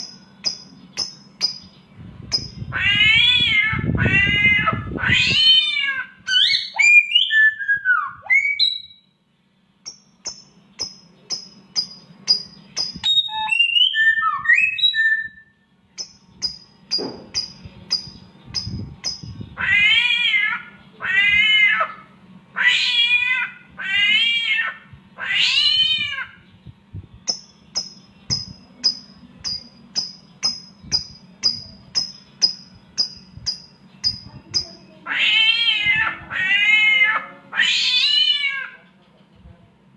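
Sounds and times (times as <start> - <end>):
bird mimicking cat meows: 2.4 - 7.5, 19.5 - 22.0, 22.6 - 26.4, 35.0 - 38.8
bird chirps and whistles: 6.3 - 9.2, 9.9 - 19.4.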